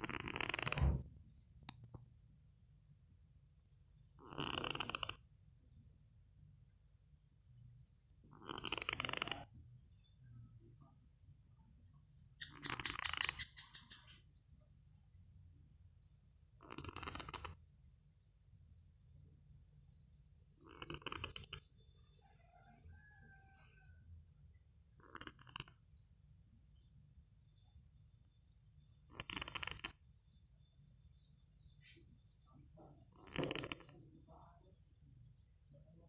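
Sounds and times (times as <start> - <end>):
cat snoring: 0.0 - 1.0, 4.2 - 5.2, 8.3 - 9.5, 16.6 - 17.6, 20.6 - 21.6, 25.0 - 25.8, 29.1 - 30.0, 33.1 - 34.0.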